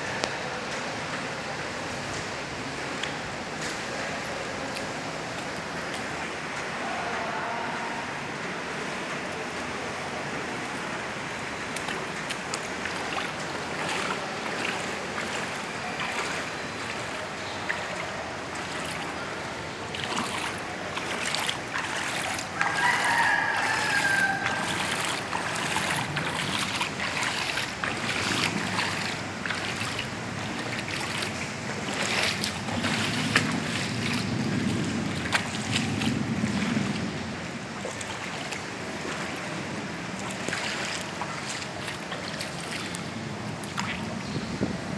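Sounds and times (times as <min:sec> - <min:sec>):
floodwater rushing: 0:00.0 - 0:44.9
rooster crowing: 0:22.6 - 0:25.7
wind blowing: 0:43.1 - 0:44.9.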